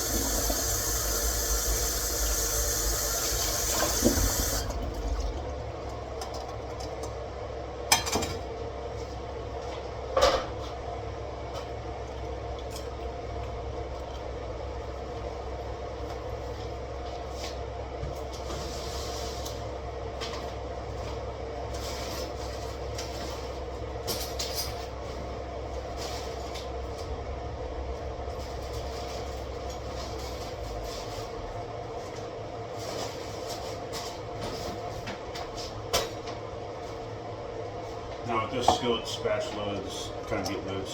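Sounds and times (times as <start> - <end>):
steady low hum: 0.0 - 7.9.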